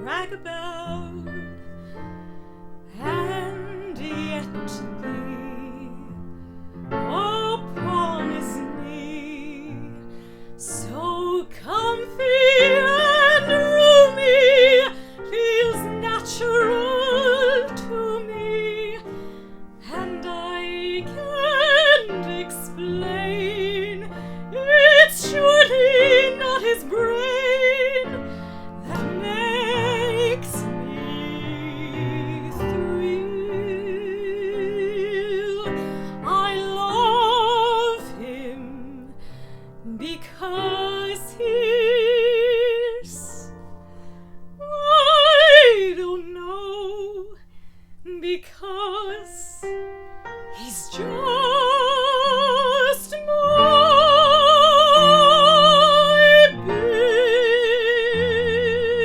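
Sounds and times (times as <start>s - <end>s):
woman singing with vibrato: 0.0s - 2.0s, 2.9s - 6.3s, 6.9s - 43.6s, 44.6s - 49.8s, 50.5s - 59.0s
piano accompaniment: 0.0s - 59.0s.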